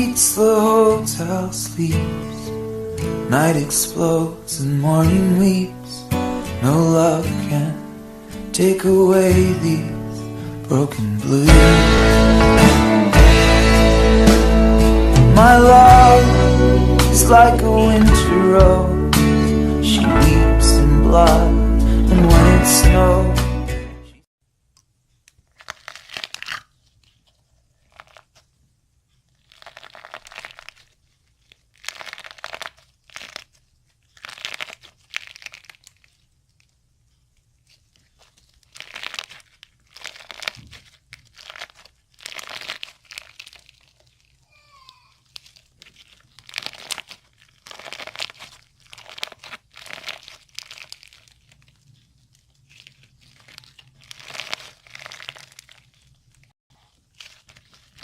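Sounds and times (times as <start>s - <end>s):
slime squeezed by hand crackling: 25.3s - 58.0s.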